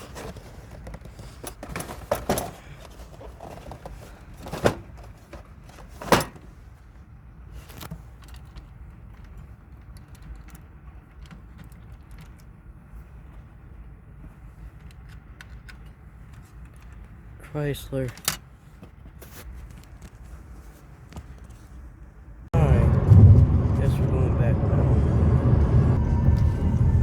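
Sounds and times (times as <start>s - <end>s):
steady low hum: 22.4s - 27.0s.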